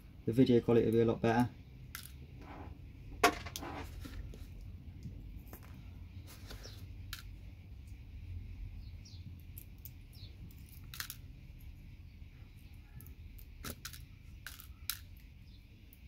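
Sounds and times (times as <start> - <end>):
low steady hum: 0.0 - 16.0
small metal pins clicking: 9.4 - 11.7, 13.0 - 15.3.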